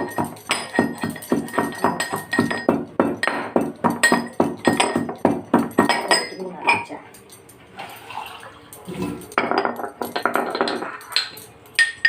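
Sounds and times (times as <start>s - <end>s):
pestle pounding in mortar: 0.0s - 6.1s.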